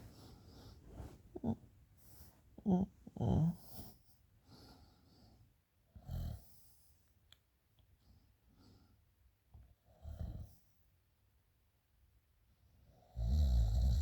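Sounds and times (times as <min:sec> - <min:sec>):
woman snoring: 0:02.6 - 0:03.9.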